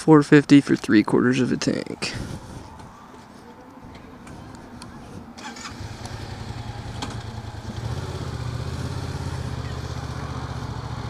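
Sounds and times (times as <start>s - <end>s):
motorcycle engine starting and idling: 5.4s - 11.0s.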